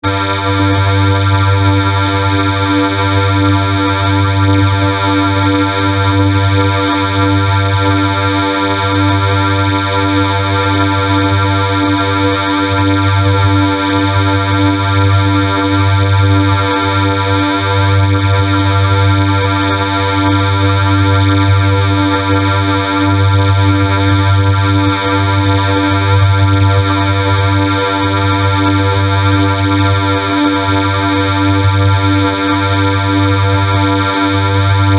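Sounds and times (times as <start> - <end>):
harsh electronic drone: 32.9 - 34.9.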